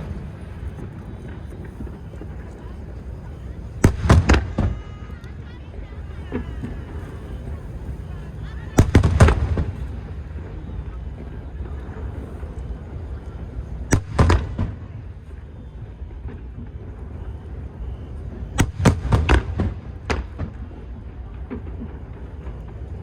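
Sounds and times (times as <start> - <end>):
firework shells bursting: 0.0 - 5.0, 6.1 - 10.5.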